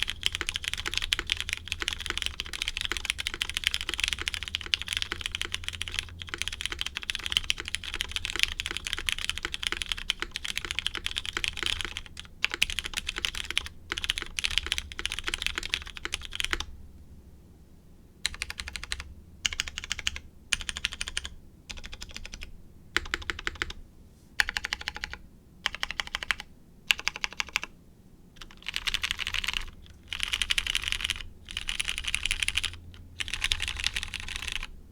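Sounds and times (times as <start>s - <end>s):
typing on mechanical keyboard: 0.0s - 16.7s, 18.2s - 23.8s, 24.4s - 27.8s, 28.4s - 34.7s.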